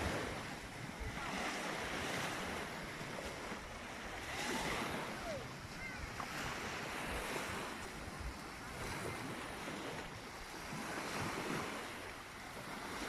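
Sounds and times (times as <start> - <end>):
sea surf washing on beach: 0.0 - 13.0.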